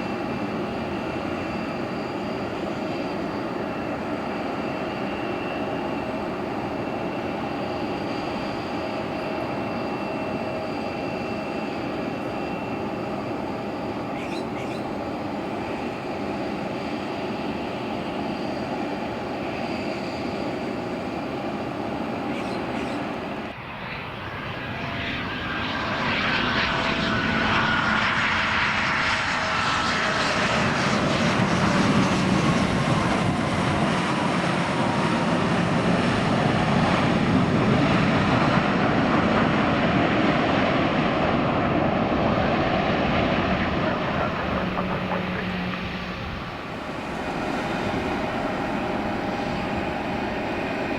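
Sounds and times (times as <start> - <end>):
airplane engines passing: 0.0 - 50.9
whine sliding down in pitch: 42.8 - 50.9.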